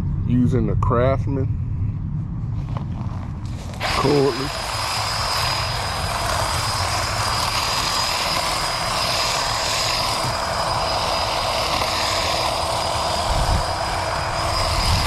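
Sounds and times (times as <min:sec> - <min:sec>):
low rumble: 0:00.0 - 0:15.0
hedge trimmer whining: 0:03.7 - 0:15.0.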